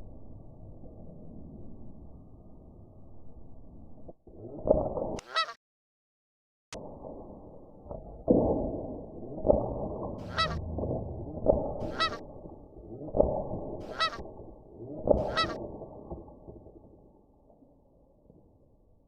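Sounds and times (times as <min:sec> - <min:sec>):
goose-like honks: 0:05.2 - 0:05.6, 0:10.2 - 0:10.6, 0:11.8 - 0:12.2, 0:13.8 - 0:14.3, 0:15.1 - 0:15.6.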